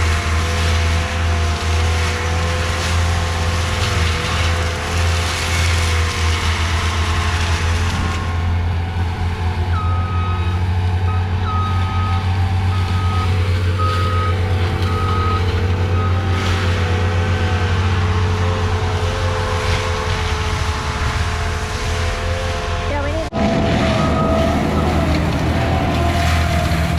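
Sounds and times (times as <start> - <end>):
heavy machine engine drone: 0.0 - 26.9
backup alarm beeping: 9.7 - 16.3, 23.9 - 25.1.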